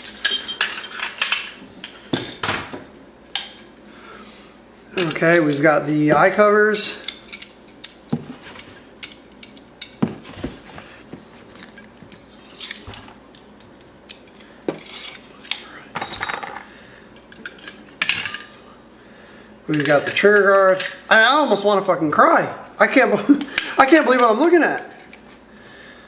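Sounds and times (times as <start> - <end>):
metal parts clinking in a box: 0.0 - 1.6.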